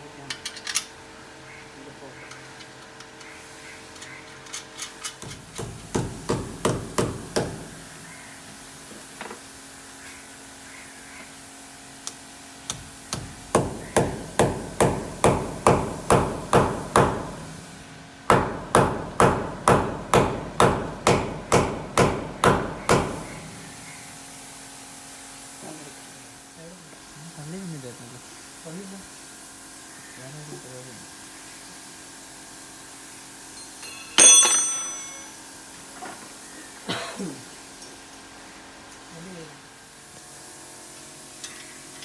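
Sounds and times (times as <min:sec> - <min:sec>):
ringing hammer blows: 0:33.8 - 0:35.4.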